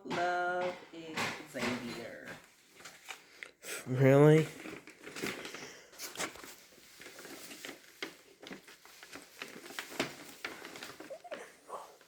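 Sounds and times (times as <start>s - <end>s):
wrapping paper rustling: 4.1s - 12.0s.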